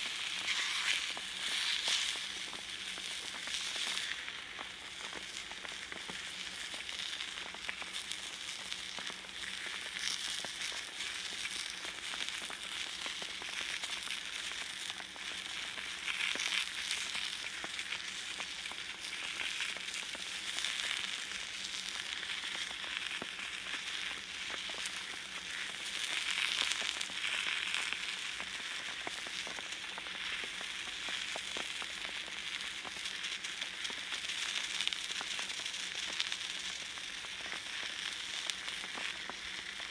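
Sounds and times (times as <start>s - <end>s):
fish sizzling on a griddle: 0.0s - 39.9s.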